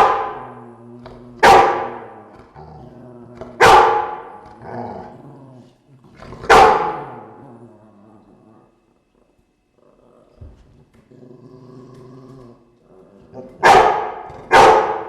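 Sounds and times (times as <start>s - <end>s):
loud sharp dog barks: 0.0s - 0.4s, 1.4s - 2.1s, 3.6s - 4.4s, 6.5s - 7.1s, 13.6s - 15.0s
dogs growling low: 0.0s - 3.6s, 4.3s - 13.6s.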